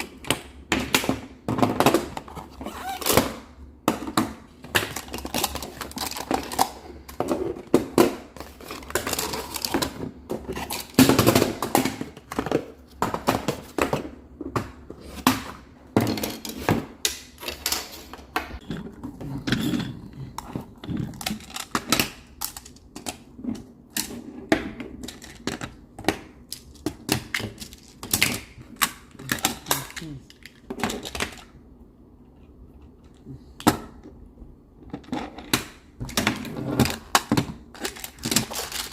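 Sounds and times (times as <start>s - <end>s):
plastic tiles clacking together: 19.4s - 23.3s.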